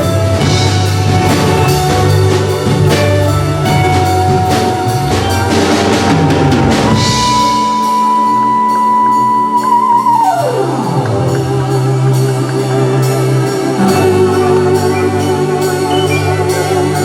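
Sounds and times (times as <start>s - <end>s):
high note sliding down: 0.0s - 12.3s
live music sustained notes and chords: 0.0s - 17.0s.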